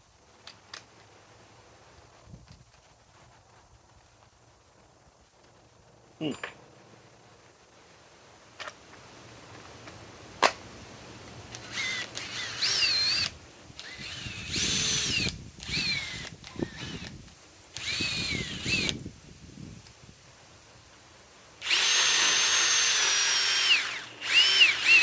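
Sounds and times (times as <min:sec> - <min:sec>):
impact driver driving screw: 0:11.5 - 0:17.2, 0:21.6 - 0:25.0.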